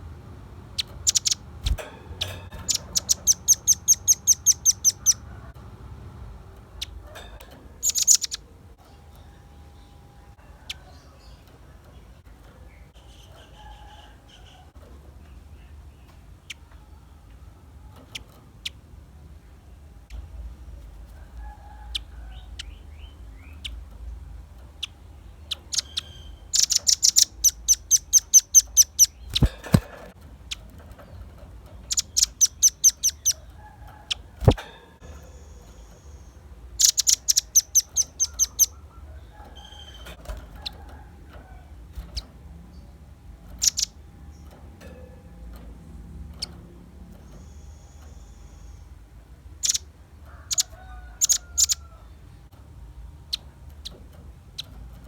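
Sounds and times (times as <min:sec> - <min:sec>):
bird rapid trills: 0:00.8 - 0:05.3, 0:06.8 - 0:08.4, 0:25.5 - 0:38.9
bird single chips: 0:00.8 - 0:05.3, 0:25.5 - 0:33.5.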